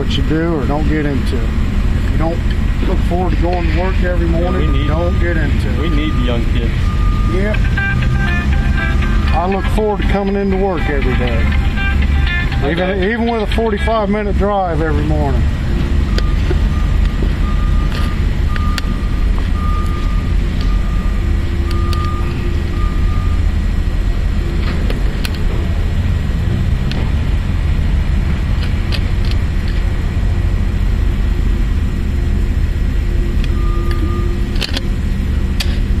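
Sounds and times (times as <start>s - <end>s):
vehicle engine and road rumble: 0.0s - 36.0s
short beeps: 4.3s - 12.8s, 16.0s - 23.4s, 33.5s - 34.5s.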